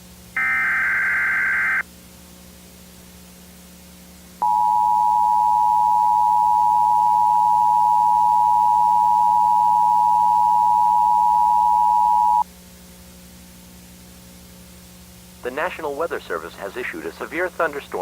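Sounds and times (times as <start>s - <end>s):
loud steady alert tone: 0.4s - 1.8s
tape hum: 4.4s - 12.4s.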